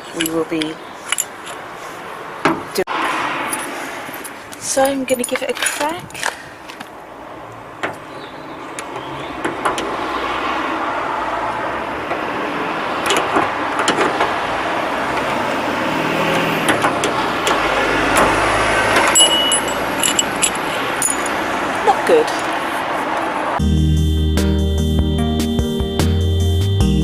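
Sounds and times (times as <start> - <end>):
passing vehicle engine and tyres: 0.0 - 24.1.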